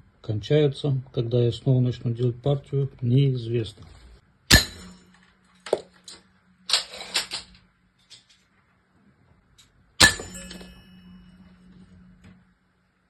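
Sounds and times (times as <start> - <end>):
pellet hitting steel target: 4.5 - 5.2, 10.0 - 11.4.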